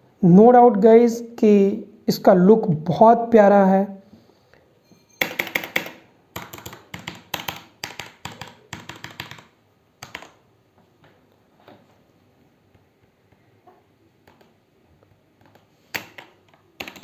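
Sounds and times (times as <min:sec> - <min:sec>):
mechanical keyboard typing: 0:05.2 - 0:10.4, 0:15.4 - 0:17.0.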